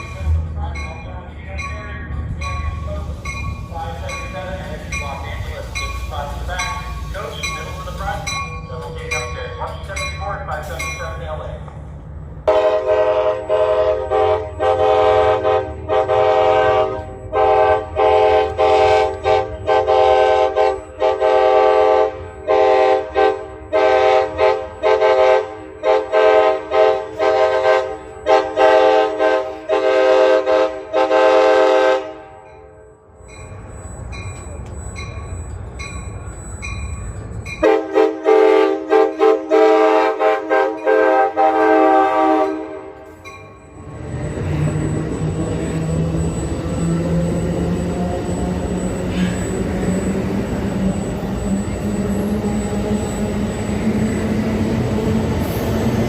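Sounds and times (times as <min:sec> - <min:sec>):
locomotive air horn playing a tune: 0:12.5 - 0:32.4, 0:37.6 - 0:43.1.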